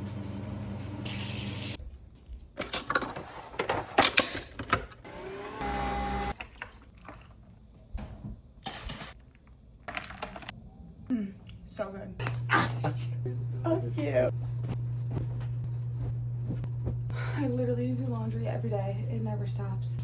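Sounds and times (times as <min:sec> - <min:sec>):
small appliance motor hum: 0:05.0 - 0:06.4.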